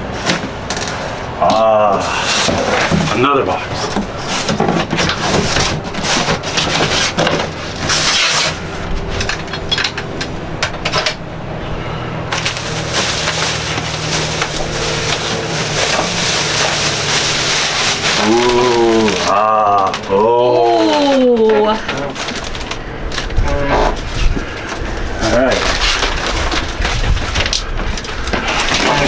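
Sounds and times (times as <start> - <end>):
cardboard tearing: 0.0 - 9.4, 12.3 - 29.0
handling noise: 0.0 - 29.0
steady hum: 0.0 - 29.0.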